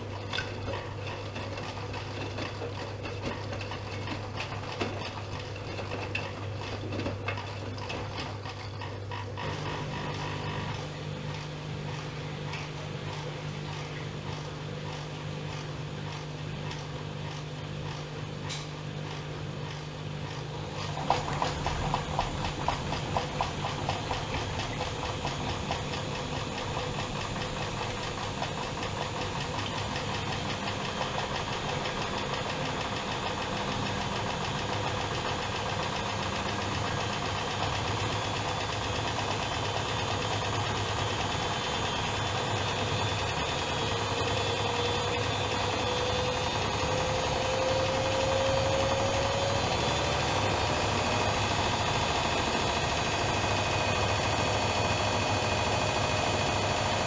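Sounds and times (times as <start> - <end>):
washing machine humming: 0.0 - 57.0
drum motor rattling and whining: 19.6 - 57.0.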